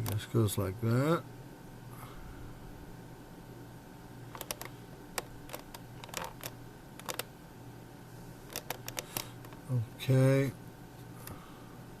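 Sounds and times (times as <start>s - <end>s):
plastic buttons clicking: 4.3s - 7.3s, 8.5s - 9.6s.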